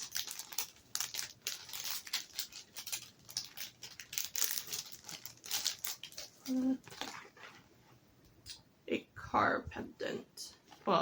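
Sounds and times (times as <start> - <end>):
packaging crinkling and rustling: 0.0 - 7.7.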